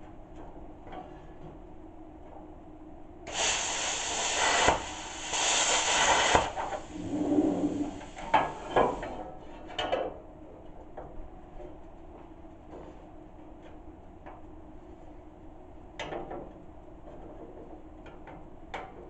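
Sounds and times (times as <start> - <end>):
plasma cutter hissing: 3.3 - 9.0
faint air hiss: 3.3 - 9.2.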